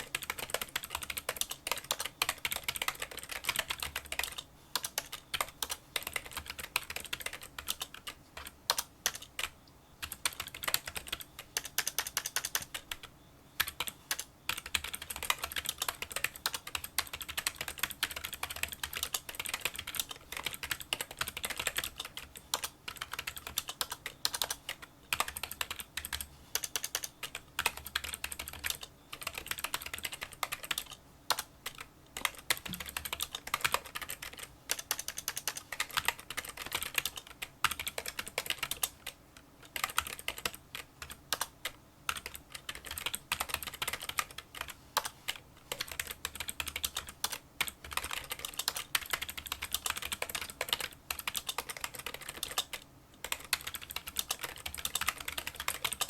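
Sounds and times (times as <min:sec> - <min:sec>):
fast keyboard typing: 0:00.0 - 0:56.0.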